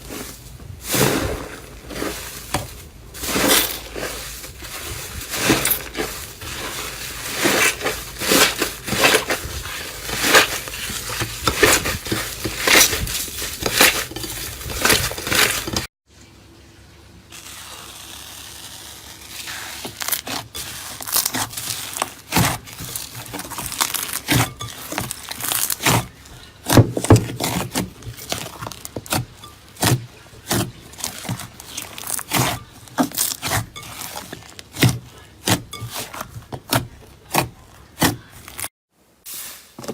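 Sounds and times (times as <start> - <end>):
slime crackling and popping: 17.3 - 29.2, 29.8 - 34.9.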